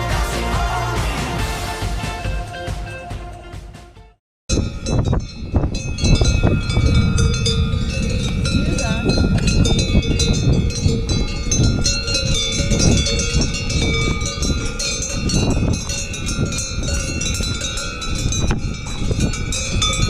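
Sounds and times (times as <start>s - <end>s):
livestock bells clanking: 4.5s - 20.0s.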